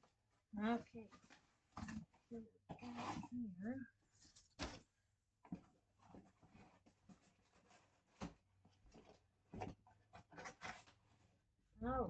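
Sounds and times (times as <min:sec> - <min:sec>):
packaging rustling and scraping: 0:05.5 - 0:11.3.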